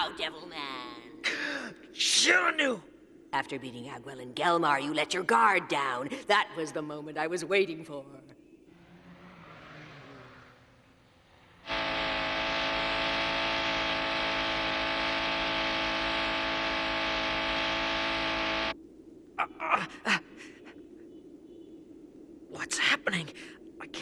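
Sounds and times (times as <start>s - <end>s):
sustained droning chord: 10.9s - 18.8s.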